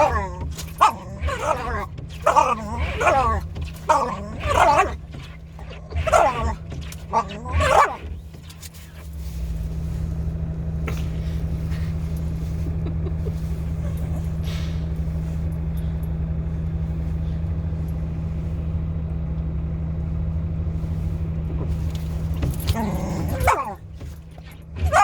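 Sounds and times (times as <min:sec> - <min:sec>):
engine humming: 0:00.0 - 0:25.0.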